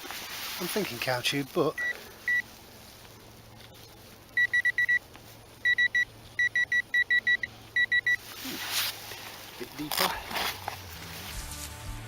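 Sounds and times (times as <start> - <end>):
metal detector beeps: 1.8 - 2.4, 4.4 - 5.0, 5.6 - 8.2.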